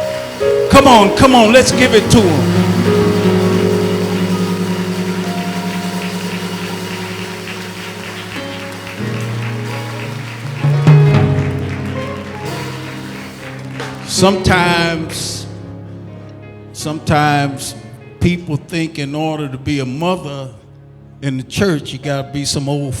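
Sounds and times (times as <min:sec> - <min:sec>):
organ chords with tremolo: 0:00.0 - 0:23.0
rising pitched swell: 0:01.0 - 0:09.6.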